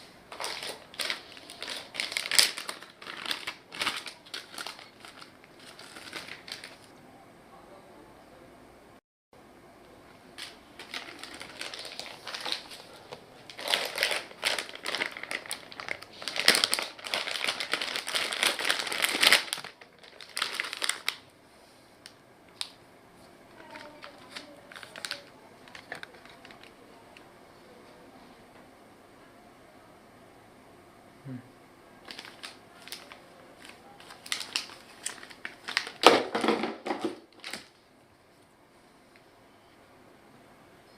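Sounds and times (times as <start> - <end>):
packaging crinkling: 0.0 - 6.9, 10.4 - 21.3, 23.5 - 26.9, 32.0 - 37.8.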